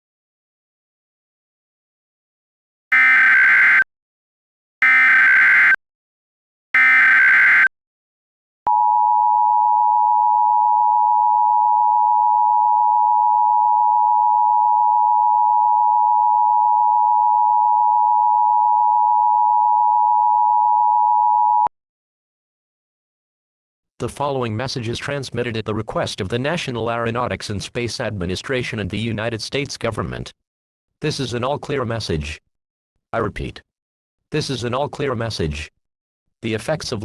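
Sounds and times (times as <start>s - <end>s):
screeching data bursts: 2.9s - 3.8s, 4.8s - 5.8s, 6.8s - 7.7s
two-tone attention signal: 2.9s - 3.8s, 4.8s - 5.8s, 6.8s - 7.7s.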